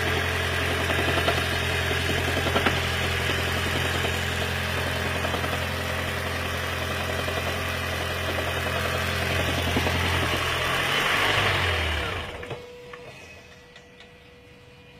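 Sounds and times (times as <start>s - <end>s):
car engine knocking: 0.0s - 11.4s.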